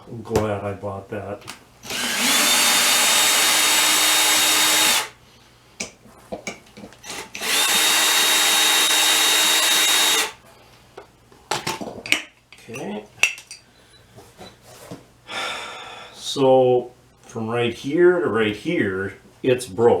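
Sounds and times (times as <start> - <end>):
cordless drill whining: 1.8 - 5.2, 7.0 - 10.4.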